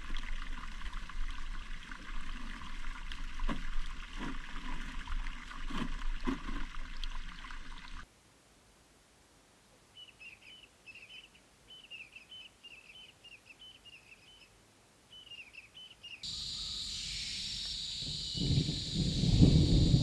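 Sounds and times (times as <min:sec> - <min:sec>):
bird chirping: 0:10.0 - 0:20.0
high-pitched ambience: 0:16.2 - 0:20.0.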